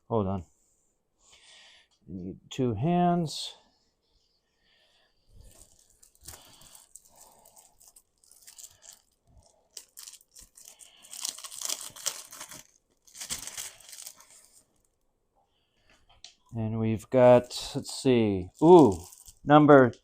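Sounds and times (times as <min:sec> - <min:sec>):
packaging rustling and crinkling: 0:05.3 - 0:15.0, 0:18.5 - 0:20.0.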